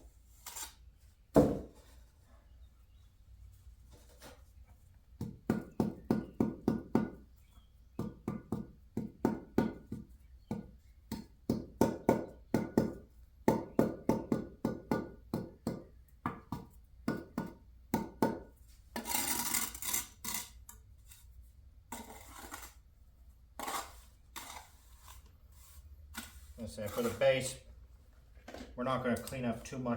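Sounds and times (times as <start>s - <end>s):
trowel scraping wet mortar: 0.3s - 0.8s, 18.9s - 21.3s, 21.9s - 22.9s, 23.6s - 27.6s.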